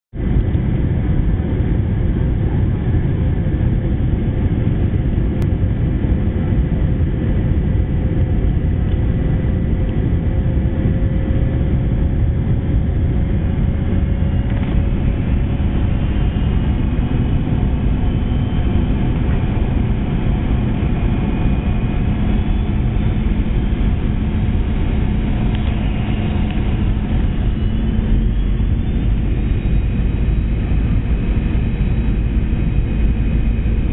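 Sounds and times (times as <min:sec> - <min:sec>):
airliner cabin rumble: 0:00.2 - 0:33.9
faint whining tones: 0:08.2 - 0:33.9.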